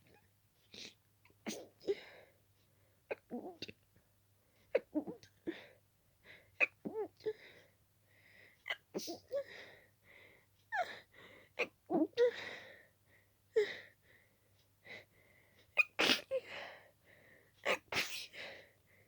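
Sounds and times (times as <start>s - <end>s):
person sneezing: 16.0s - 16.3s, 17.7s - 18.3s.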